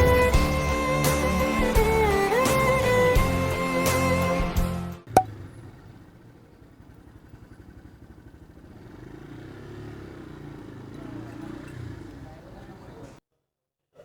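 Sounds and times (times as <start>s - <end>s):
motorcycle engine idling: 5.1s - 13.0s.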